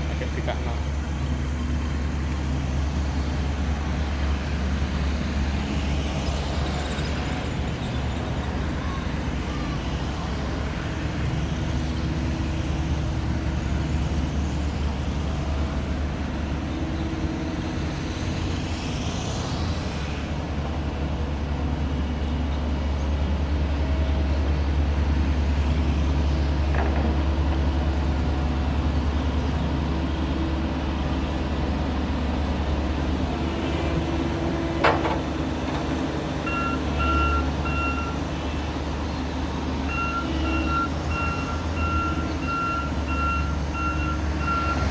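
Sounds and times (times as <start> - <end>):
heavy machinery rumbling: 23.7 - 44.9
reversing alarm beeping: 36.4 - 38.2, 39.9 - 44.9.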